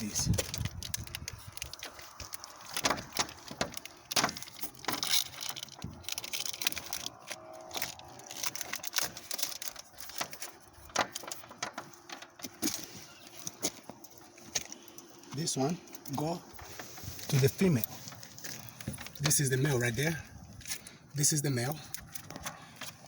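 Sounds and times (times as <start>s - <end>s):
light rattling of cables: 0.0s - 23.0s
sharp clicks and knocks: 0.4s - 7.1s, 8.4s - 12.8s.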